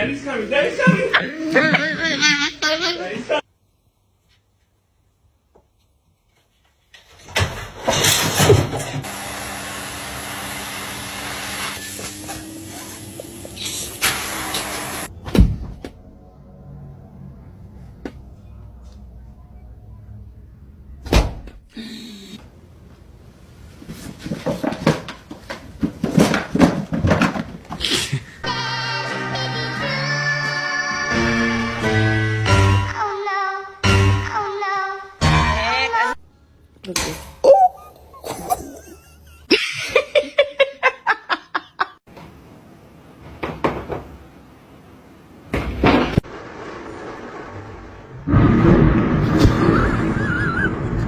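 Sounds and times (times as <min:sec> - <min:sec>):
person laughing: 0:00.8 - 0:03.1, 0:37.4 - 0:42.0, 0:49.5 - 0:51.0.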